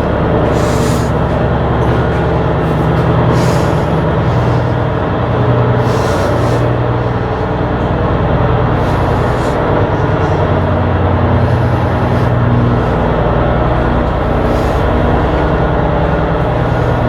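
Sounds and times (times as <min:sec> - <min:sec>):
ship diesel engine drone: 0:00.0 - 0:17.0
faint hissing: 0:00.5 - 0:01.3, 0:05.7 - 0:07.5, 0:08.7 - 0:10.6, 0:11.3 - 0:15.3.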